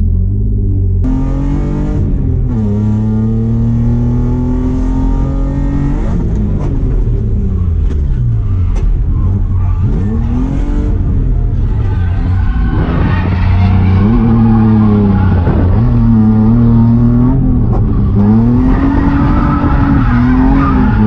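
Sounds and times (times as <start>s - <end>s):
car engine revving hard: 9.8s - 21.0s.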